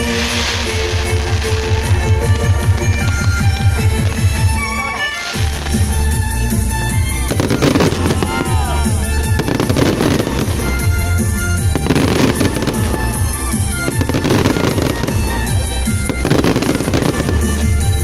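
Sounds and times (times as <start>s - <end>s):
fireworks bursting: 0.0s - 18.0s
fireworks whistling: 0.0s - 18.0s
loud background music: 0.0s - 18.0s.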